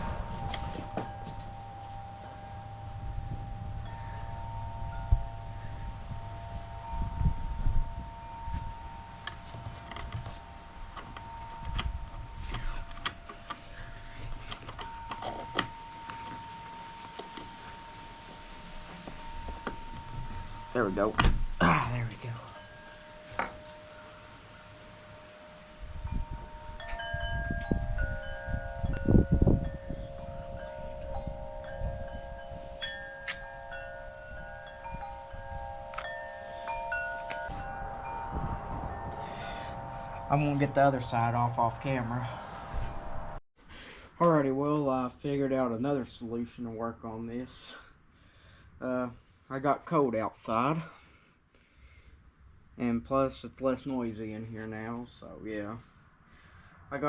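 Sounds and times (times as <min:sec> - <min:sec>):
faint steady high tone: 0:00.0 - 0:43.4
wind rumble on microphone: 0:00.0 - 0:43.4.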